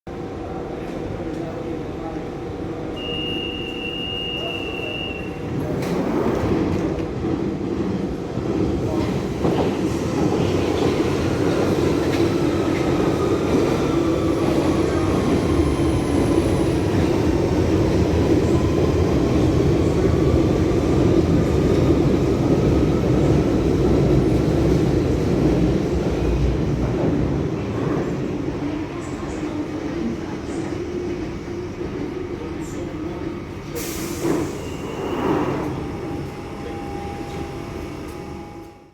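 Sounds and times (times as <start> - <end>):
train rumbling: 0.1 - 38.9
faint train whine: 31.5 - 38.9.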